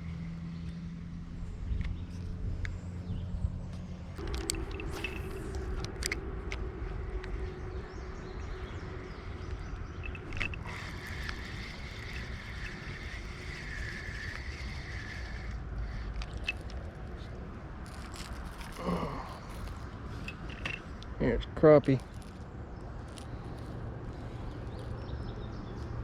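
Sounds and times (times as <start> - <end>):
fishing reel clicks: 4.2 - 6.6, 9.3 - 18.8
fishing reel whirring: 4.2 - 7.4, 8.4 - 21.0, 22.0 - 25.2.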